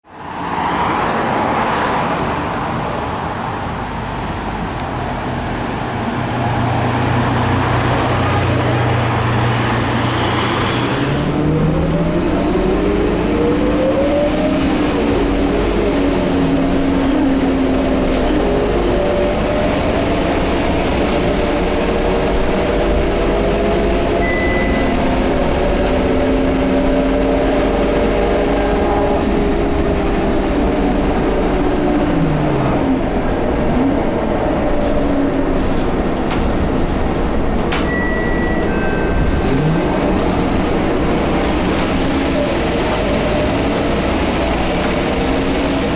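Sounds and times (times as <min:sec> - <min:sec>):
diesel bus engine humming: 0:00.8 - 0:45.9
thin high whistle: 0:24.2 - 0:25.4.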